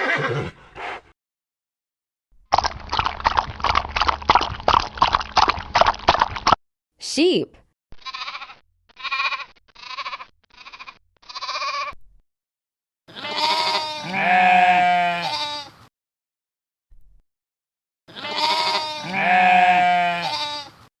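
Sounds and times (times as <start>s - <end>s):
sheep bleating: 8.0s - 12.0s, 13.1s - 15.8s, 18.1s - 20.8s.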